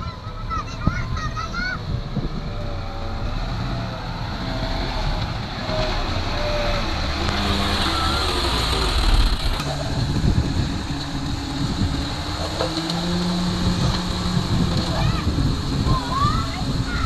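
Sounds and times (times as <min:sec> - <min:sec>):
heavy machinery engine rumble: 0:00.0 - 0:17.0
wind noise on microphone: 0:00.0 - 0:17.0.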